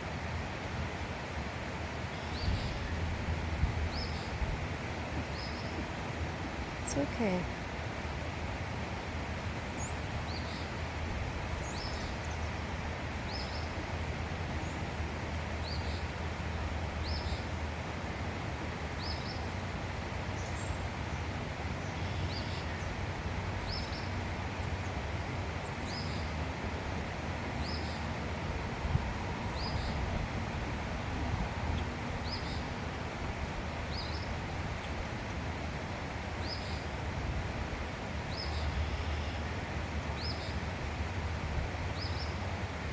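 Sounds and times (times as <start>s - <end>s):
steady outdoor rumble: 0.0s - 42.9s.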